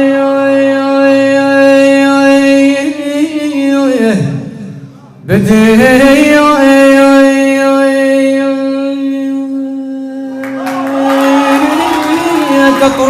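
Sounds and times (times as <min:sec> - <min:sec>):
man singing folk song: 0:00.0 - 0:04.6, 0:12.1 - 0:13.0.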